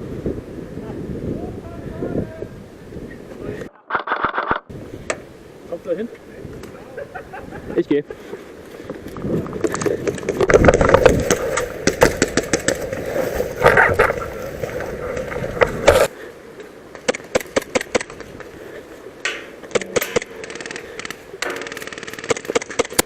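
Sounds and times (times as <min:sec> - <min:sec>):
clatter and rubbing on camera: 0:03.9 - 0:04.7, 0:09.0 - 0:16.1
sharp clicks and knocks: 0:19.2 - 0:23.0.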